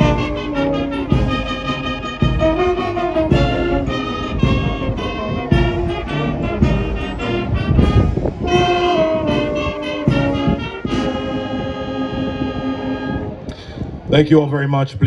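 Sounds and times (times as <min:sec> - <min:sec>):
brass band playing chords: 0:00.0 - 0:13.5
low drum strokes: 0:00.0 - 0:14.1.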